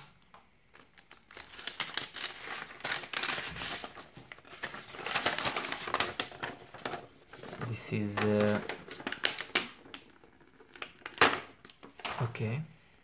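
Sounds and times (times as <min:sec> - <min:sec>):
packaging crinkling: 0:00.7 - 0:12.3.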